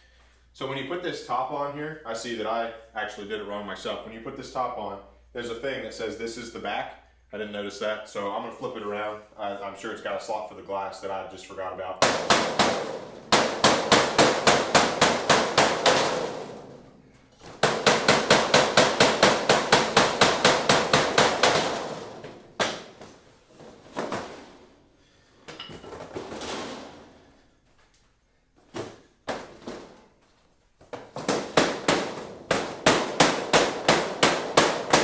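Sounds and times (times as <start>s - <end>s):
mallet knocking on plastic panels: 12.0s - 16.5s, 31.0s - 35.0s.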